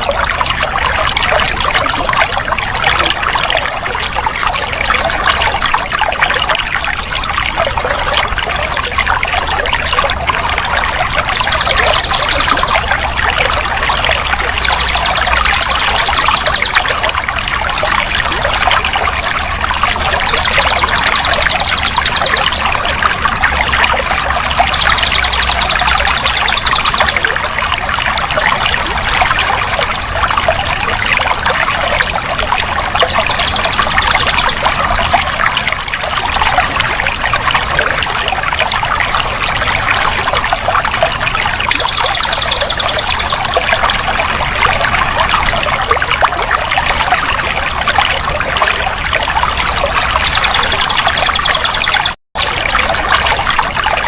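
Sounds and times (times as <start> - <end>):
water pouring and trickling: 0.0 - 54.0
high trilling sound: 11.3 - 13.0, 14.4 - 17.1, 33.2 - 34.6, 41.7 - 43.5.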